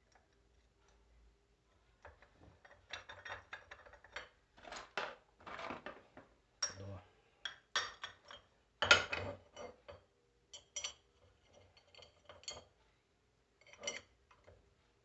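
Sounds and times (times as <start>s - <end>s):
metal parts and tools clinking: 13.6s - 14.5s.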